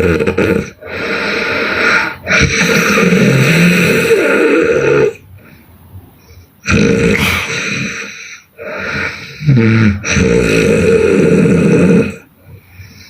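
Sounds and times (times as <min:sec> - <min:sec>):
person snoring loudly: 0:00.0 - 0:05.2, 0:06.6 - 0:12.3.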